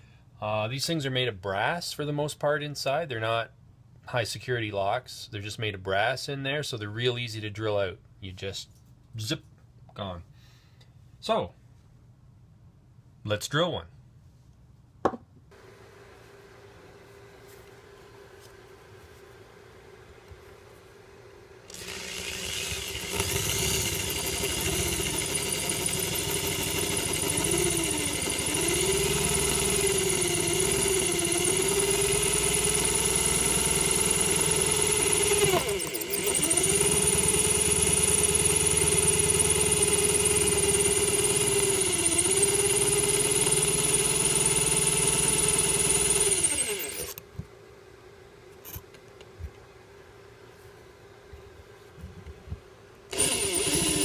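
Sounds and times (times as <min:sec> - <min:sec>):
electric drill drilling metal: 0:21.7 - 0:47.2, 0:53.1 - 0:54.0.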